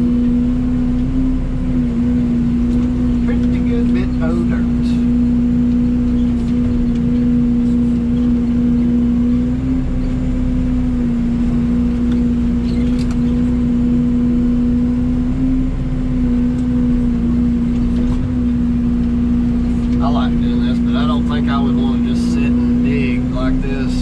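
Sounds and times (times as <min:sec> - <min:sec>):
excavator diesel engine running: 0:00.0 - 0:24.0.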